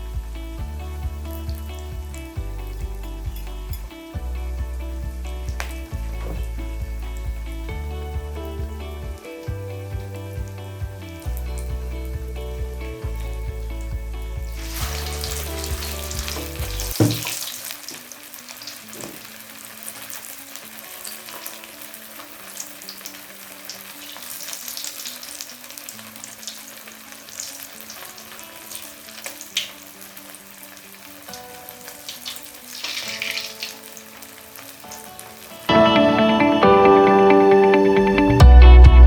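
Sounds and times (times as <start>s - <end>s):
music: 0.0s - 39.0s
food sizzling in hot oil: 14.5s - 35.7s
knock: 16.9s - 17.3s.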